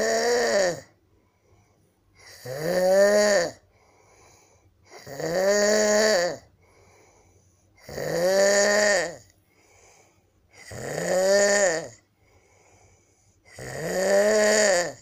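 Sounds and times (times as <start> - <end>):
man snoring with bleating tone: 0.0 - 0.9, 2.2 - 3.6, 4.9 - 6.5, 7.8 - 9.3, 10.6 - 12.0, 13.5 - 15.0
quiet breathing: 0.9 - 2.4, 3.6 - 5.1, 6.4 - 7.9, 9.2 - 10.8, 11.9 - 13.6.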